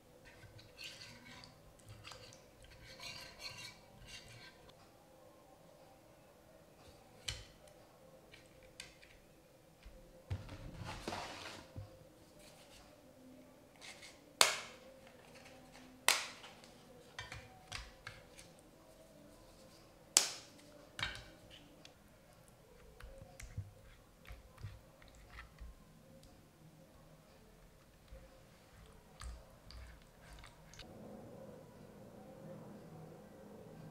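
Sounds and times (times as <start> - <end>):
rustling or scraping: 10.5 - 12.9.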